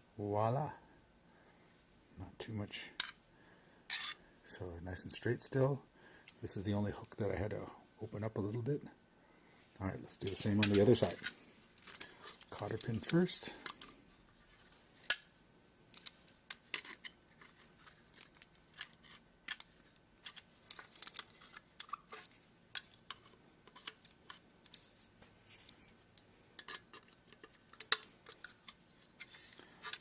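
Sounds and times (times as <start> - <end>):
light metal scrapes: 3.9 - 4.2.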